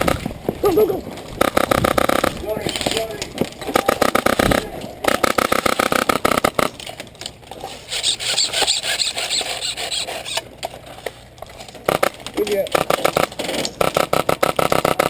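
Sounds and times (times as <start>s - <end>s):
airsoft gun full-auto burst: 1.4s - 2.4s, 3.8s - 6.7s, 12.7s - 15.0s.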